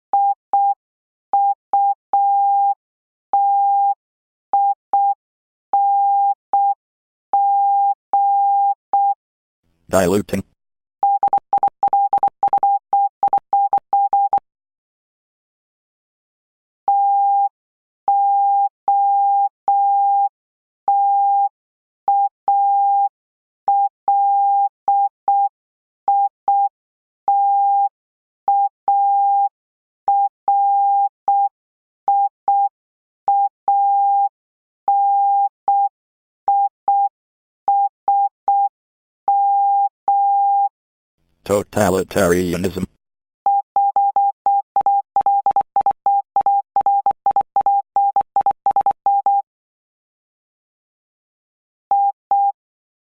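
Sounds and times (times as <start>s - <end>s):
morse code beeps: 11.0s - 14.4s, 43.5s - 49.4s.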